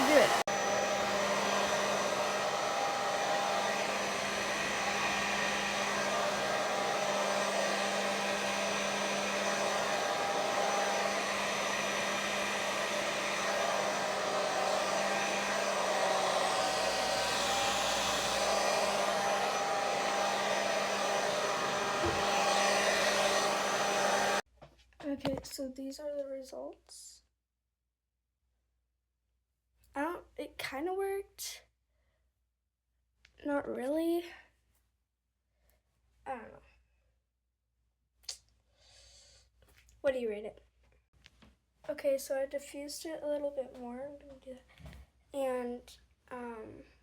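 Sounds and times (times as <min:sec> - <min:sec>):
hair dryer running: 0:00.0 - 0:24.4.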